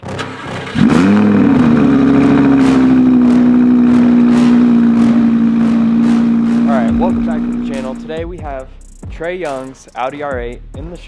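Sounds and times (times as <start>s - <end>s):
sports car engine starting and idling: 0.0s - 8.6s.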